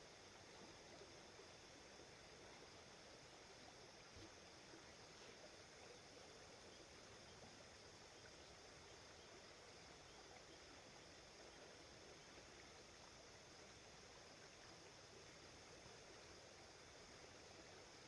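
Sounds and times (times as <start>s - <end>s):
river flowing: 0.0s - 18.0s.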